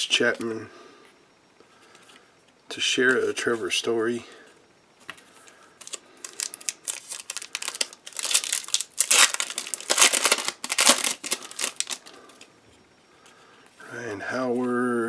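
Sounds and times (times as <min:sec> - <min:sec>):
wrapper tearing and crinkling: 0:05.8 - 0:12.1.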